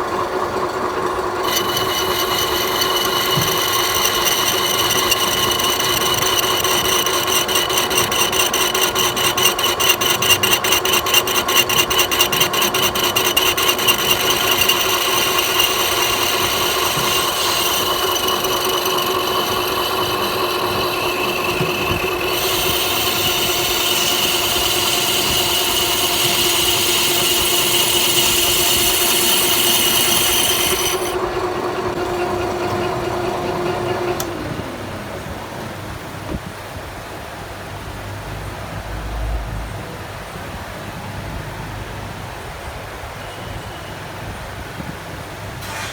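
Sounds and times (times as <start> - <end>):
metal lathe running: 0.0 - 35.4.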